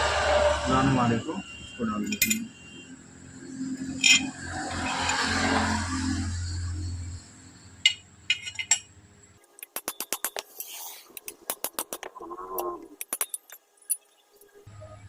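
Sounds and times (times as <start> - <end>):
metal-on-metal tapping: 7.8 - 8.9, 13.0 - 14.1.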